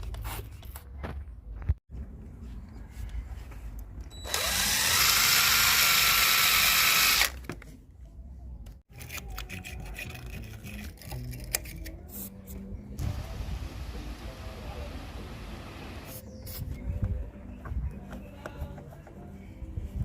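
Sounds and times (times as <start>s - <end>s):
drill spinning wire brush: 4.2s - 7.4s
tools clicking and handling: 8.9s - 12.2s.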